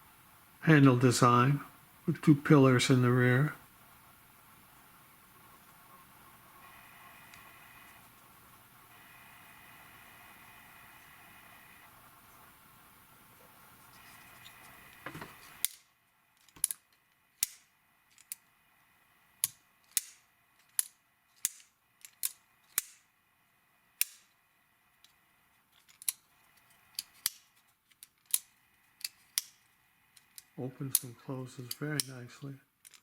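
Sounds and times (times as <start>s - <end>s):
pocket knife clicking open and shut: 19.4s - 23.0s.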